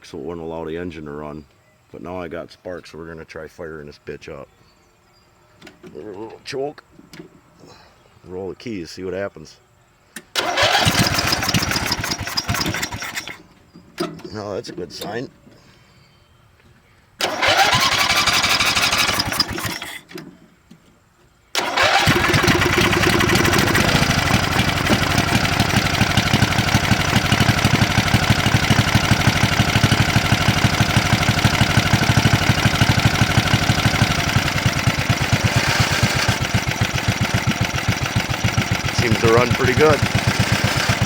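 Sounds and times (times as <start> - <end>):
riding mower engine starting: 10.2 - 15.7, 17.2 - 20.4, 21.5 - 41.0.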